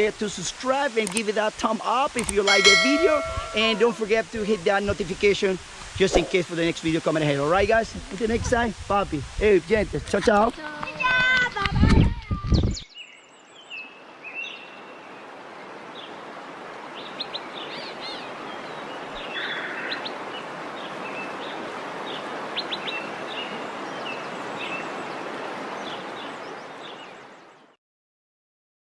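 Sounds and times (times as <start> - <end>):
waterfall rushing: 2.3 - 8.0, 14.6 - 27.4
birds chirping: 2.5 - 4.1, 12.5 - 27.7.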